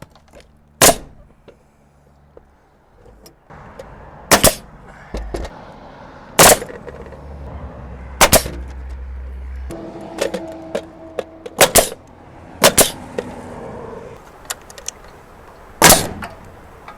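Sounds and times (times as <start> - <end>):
pneumatic nail gun firing: 0.8 - 1.1, 4.3 - 4.6, 6.4 - 6.7, 12.6 - 13.0, 15.8 - 16.3
low steady hum: 1.2 - 16.9.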